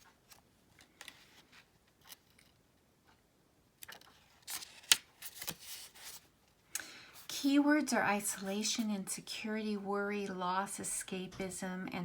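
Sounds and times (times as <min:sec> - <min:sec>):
pages rustling: 0:00.0 - 0:02.5, 0:04.1 - 0:06.3.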